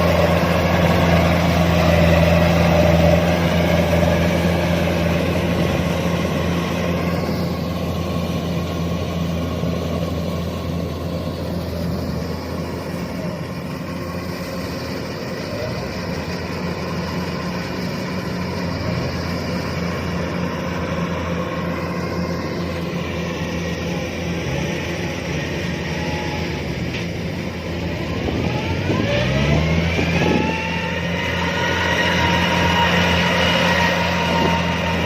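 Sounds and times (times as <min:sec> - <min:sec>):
combine harvester engine hum: 0:00.0 - 0:35.0.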